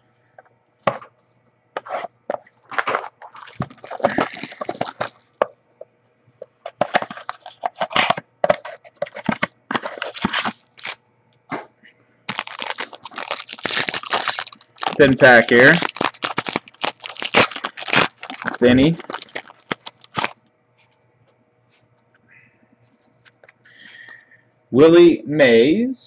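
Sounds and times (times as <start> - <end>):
card packaging tearing and cracking: 2.6 - 5.2, 6.8 - 11.0, 12.3 - 20.4.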